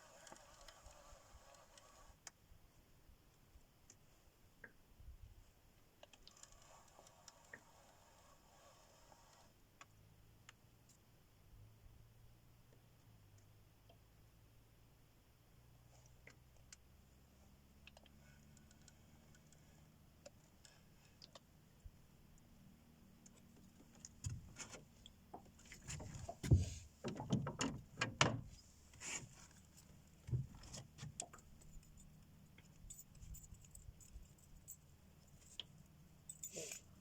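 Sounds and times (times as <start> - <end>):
knocks and rattles of handling: 23.3 - 36.9.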